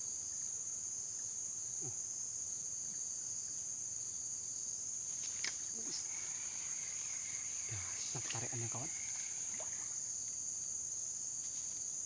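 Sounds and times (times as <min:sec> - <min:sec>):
high-pitched insect chorus: 0:00.0 - 0:12.0.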